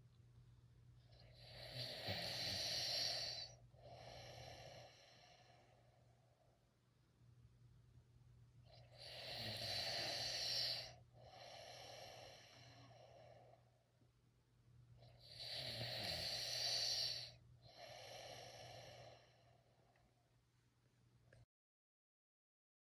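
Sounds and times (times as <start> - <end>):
person snoring: 1.4 - 5.7, 8.9 - 13.0, 15.2 - 19.4.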